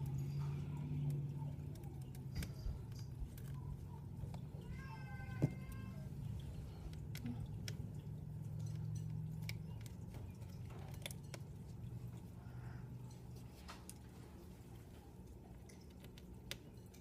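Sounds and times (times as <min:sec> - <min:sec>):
small parts clicking and tapping: 0:00.0 - 0:12.3
low steady hum: 0:00.0 - 0:17.0.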